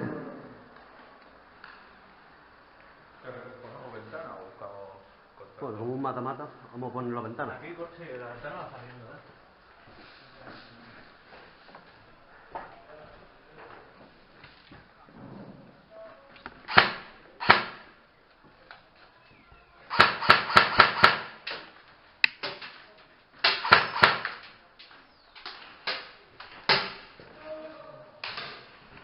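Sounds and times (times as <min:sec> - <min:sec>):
airsoft gun shots: 0:16.7 - 0:18.0, 0:19.9 - 0:21.6, 0:23.4 - 0:24.5.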